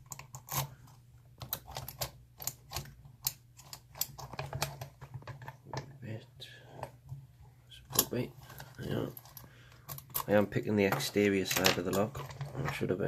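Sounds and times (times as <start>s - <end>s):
metal lock and tools clicking: 1.4s - 4.8s.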